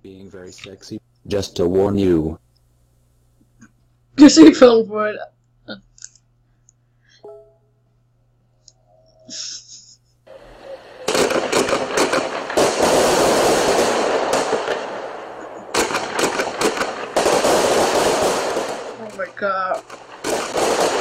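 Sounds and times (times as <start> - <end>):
firework hiss: 10.3 - 18.8
fireworks crackling and popping: 10.3 - 21.0.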